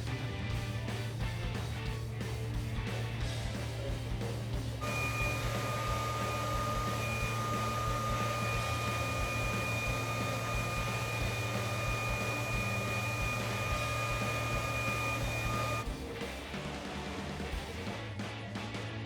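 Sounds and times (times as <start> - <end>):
electric appliance hum: 4.7 - 16.1
high-pitched whine: 4.8 - 15.8.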